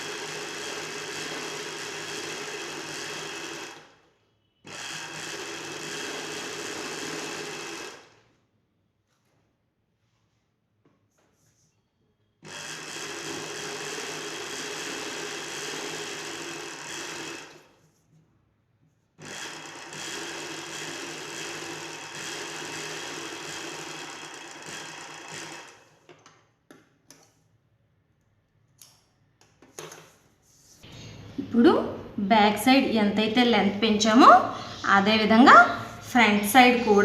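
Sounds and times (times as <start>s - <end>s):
sewing machine stitching: 0.0s - 4.0s, 4.6s - 8.2s, 12.4s - 17.8s, 19.2s - 26.2s.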